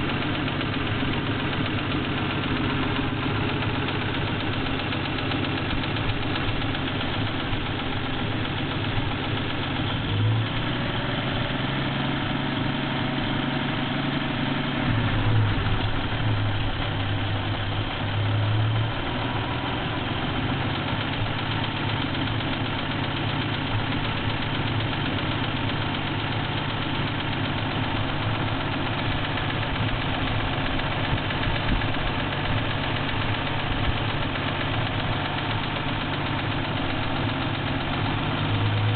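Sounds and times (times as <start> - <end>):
car engine idling with a knock: 20.5 - 38.9.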